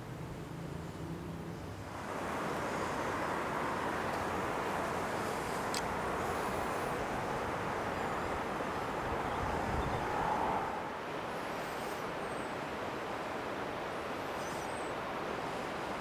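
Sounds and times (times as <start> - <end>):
stream water rushing: 1.3 - 16.0.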